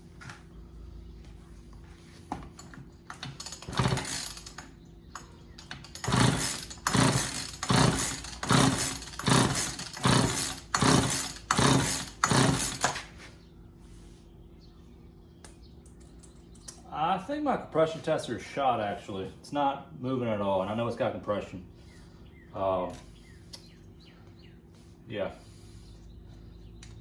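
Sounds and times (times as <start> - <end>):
engine turning over without firing: 2.5 - 13.2
chainsaw recoil starter pulls: 2.6 - 13.2.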